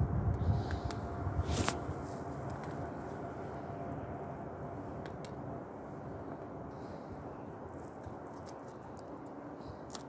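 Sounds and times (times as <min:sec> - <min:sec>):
distant freight train rumble: 0:00.0 - 0:09.9
faint steady tone: 0:00.0 - 0:10.0.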